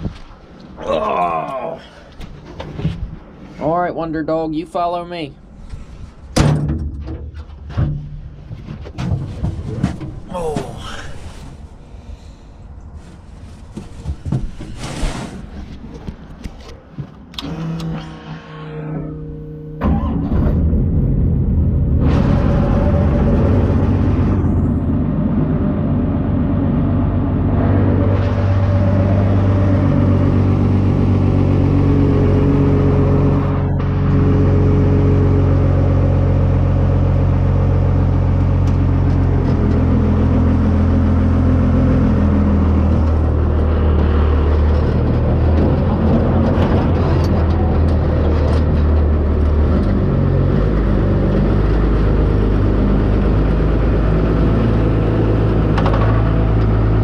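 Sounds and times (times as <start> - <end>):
truck engine running: 19.8 - 57.0.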